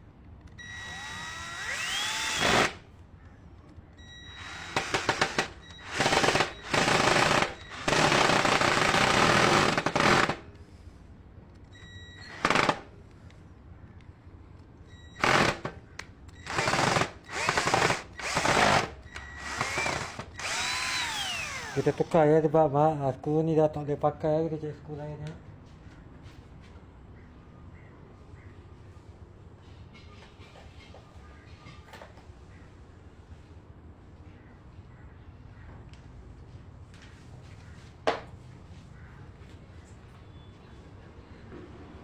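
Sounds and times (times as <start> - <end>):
cordless drill whining: 0.5 - 2.8, 4.0 - 10.4, 11.8 - 12.8, 15.2 - 15.7, 16.4 - 22.2
drill bit rattling on screw: 0.6 - 2.8, 4.4 - 10.4, 12.3 - 12.8, 15.2 - 15.7, 16.4 - 22.2.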